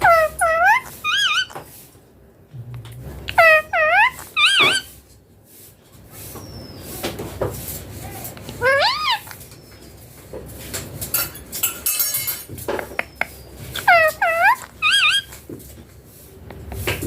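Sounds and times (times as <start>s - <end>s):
parrot whistled calls: 0.0s - 1.5s, 3.4s - 4.9s, 8.6s - 9.3s, 13.8s - 15.4s.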